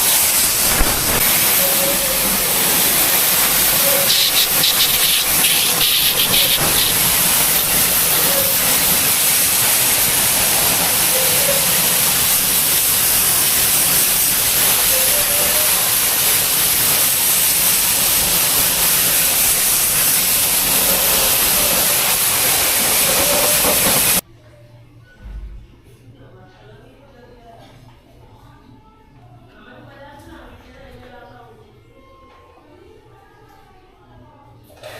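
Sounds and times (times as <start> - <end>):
jet pump spraying water: 0.0 - 24.2.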